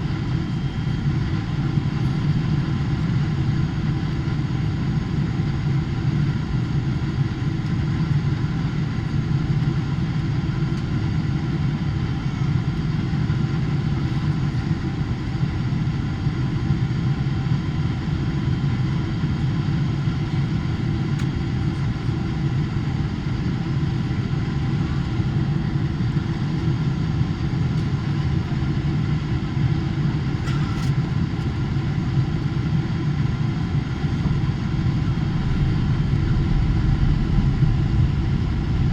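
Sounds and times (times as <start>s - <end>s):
airplane cabin rumble: 0.0s - 38.9s
faint steady whine: 0.0s - 38.9s.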